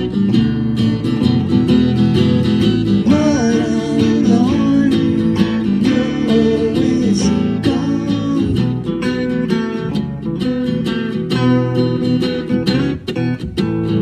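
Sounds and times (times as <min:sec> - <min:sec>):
strummed acoustic guitar: 0:00.0 - 0:14.0
sliding melody line: 0:00.4 - 0:10.2.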